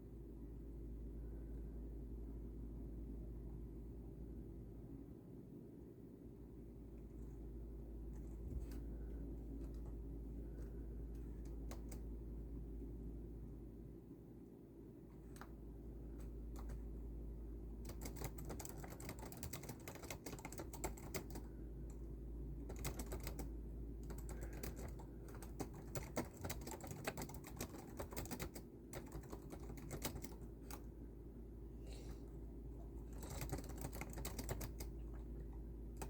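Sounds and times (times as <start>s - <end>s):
steady low hum: 0.0s - 36.0s
typing on a keyboard: 11.4s - 12.1s, 16.5s - 16.8s, 17.8s - 22.0s, 22.6s - 30.9s, 33.1s - 35.3s.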